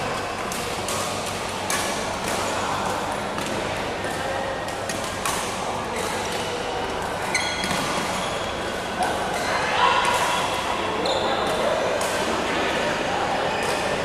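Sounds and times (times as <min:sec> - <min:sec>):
rackets hitting shuttlecock: 0:00.4 - 0:08.2, 0:11.3 - 0:12.4, 0:13.6 - 0:14.0.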